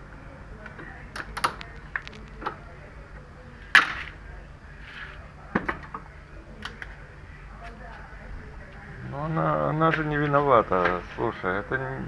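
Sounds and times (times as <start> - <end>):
loud plastic crack: 3.6 - 4.3.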